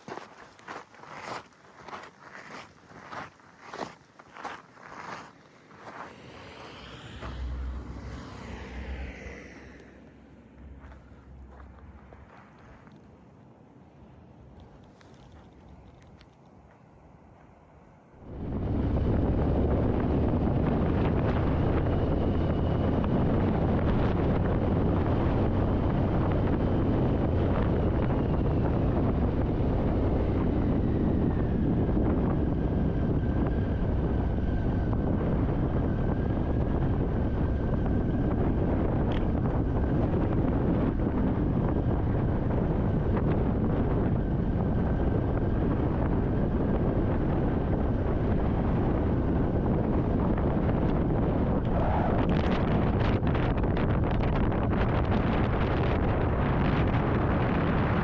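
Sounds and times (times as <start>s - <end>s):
strong wind on microphone: 0.0s - 12.2s, 18.2s - 58.0s.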